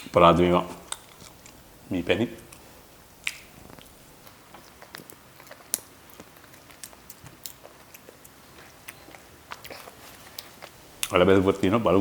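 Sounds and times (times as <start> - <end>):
person chewing with mouth clicks: 2.5 - 11.2.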